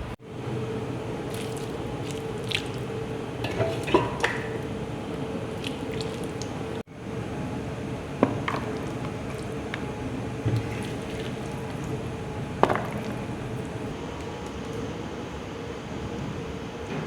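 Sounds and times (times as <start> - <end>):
steady hum: 0.0 - 17.0
utensils and dishes clinking: 3.4 - 4.6.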